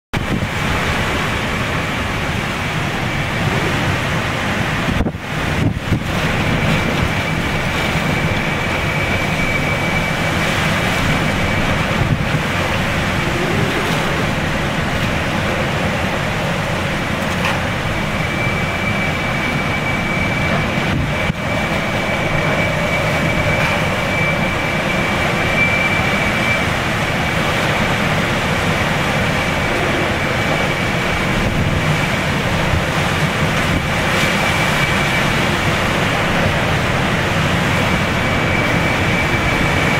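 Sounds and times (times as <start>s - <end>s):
wind buffeting microphone: 0.1s - 39.9s
wind howling: 0.2s - 39.9s
thin high whistle: 18.2s - 26.7s.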